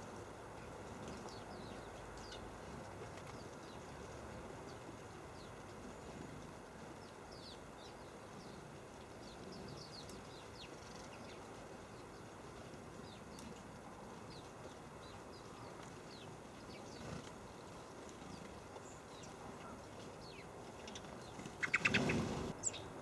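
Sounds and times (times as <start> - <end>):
birds chirping: 7.0 - 23.0.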